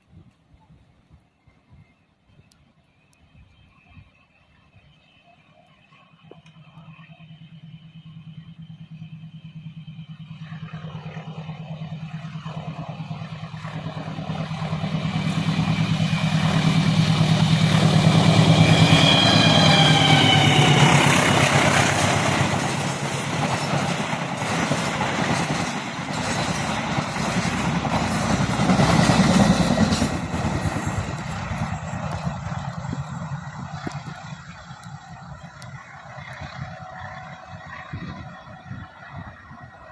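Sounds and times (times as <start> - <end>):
locomotive engine hum: 0.0 - 39.9
rail joint clicks: 0.0 - 39.9
train wheels clattering on rails: 11.2 - 39.8.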